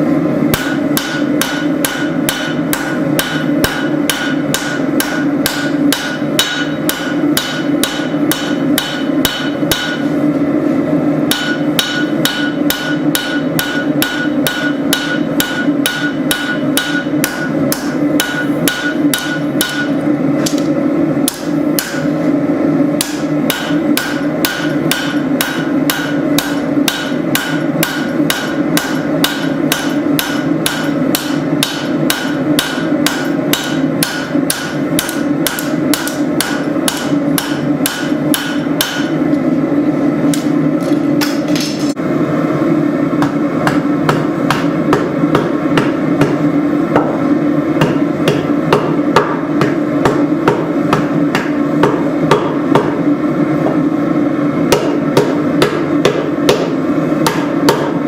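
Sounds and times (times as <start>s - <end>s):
hammer ringing on an anvil: 0.6s - 10.0s, 11.3s - 20.0s, 23.0s - 39.2s.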